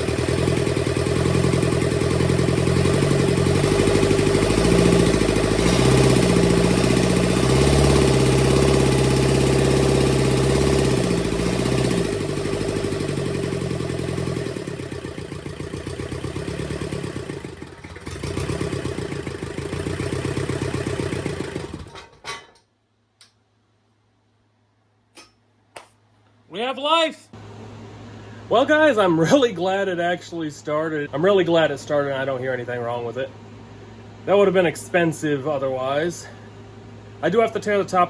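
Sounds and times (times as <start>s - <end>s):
diesel engine running: 0.0s - 22.1s, 27.4s - 38.0s.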